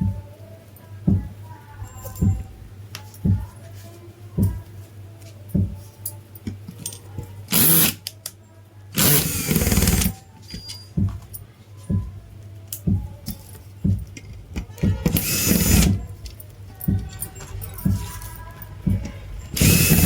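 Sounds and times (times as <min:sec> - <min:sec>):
music with thumping beat: 0:00.0 - 0:00.3, 0:01.0 - 0:03.7, 0:04.3 - 0:04.7, 0:05.5 - 0:05.9, 0:09.0 - 0:10.2, 0:10.9 - 0:20.0
power tool running: 0:07.5 - 0:08.0, 0:09.0 - 0:10.1, 0:15.0 - 0:16.0, 0:19.5 - 0:20.0.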